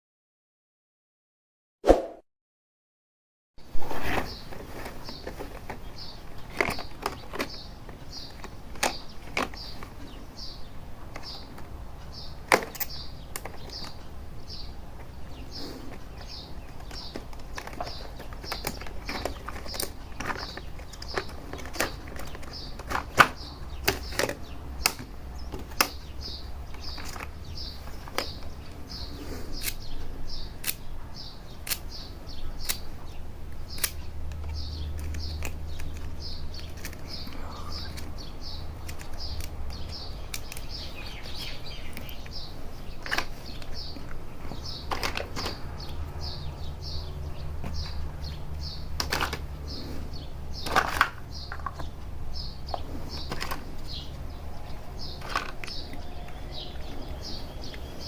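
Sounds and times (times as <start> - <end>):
bird chirping: 3.6 - 58.0
plastic toy pieces clicking: 12.4 - 14.0, 16.7 - 26.0, 29.6 - 29.8, 30.6 - 30.8, 31.6 - 31.9, 32.6 - 32.9, 33.6 - 38.1, 38.8 - 42.4, 49.0 - 49.4, 50.6 - 51.9, 55.1 - 56.4.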